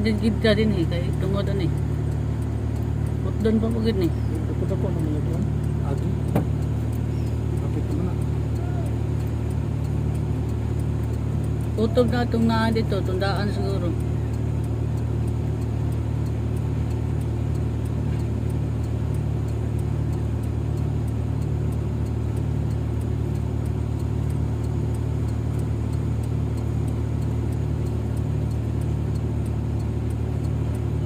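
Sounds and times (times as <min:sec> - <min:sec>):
engine running steadily: 0:00.0 - 0:31.0.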